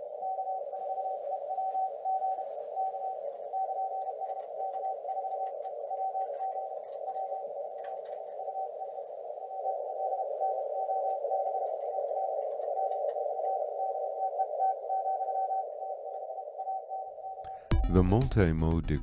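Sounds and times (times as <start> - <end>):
morse code tone: 17.5 - 19.0.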